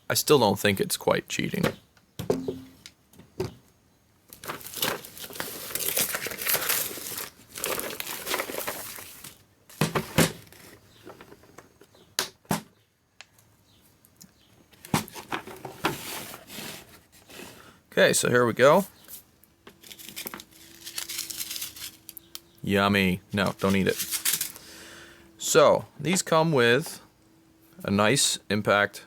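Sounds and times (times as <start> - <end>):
packaging crinkling and tearing: 4.3 - 9.4, 19.7 - 22.6, 23.4 - 24.6.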